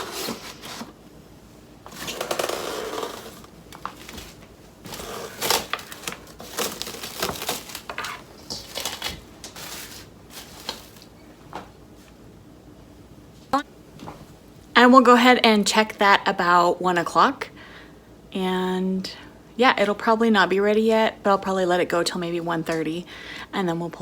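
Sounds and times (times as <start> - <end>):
plastic wrap crinkling: 1.9 - 11.5.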